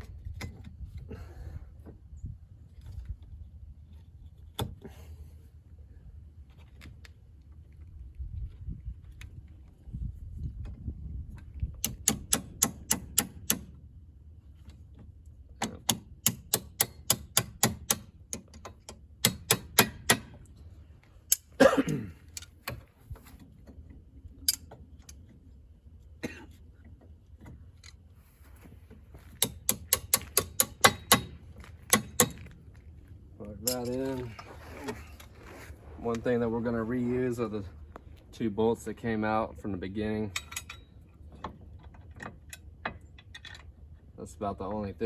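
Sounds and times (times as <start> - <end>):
hand ratchet clicking: 11.8 - 13.7, 29.4 - 31.3.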